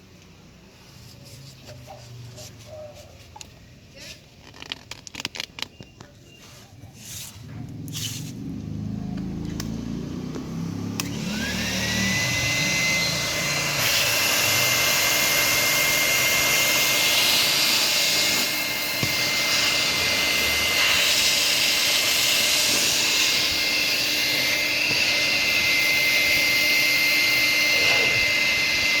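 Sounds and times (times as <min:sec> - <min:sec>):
vacuum cleaner motor whine: 0:07.7 - 0:29.0.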